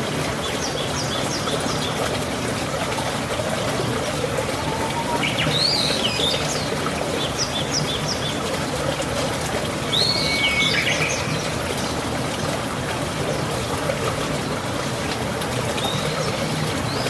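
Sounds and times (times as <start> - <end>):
steady rainfall: 0.0 - 17.0
songbirds chirping: 3.9 - 8.6.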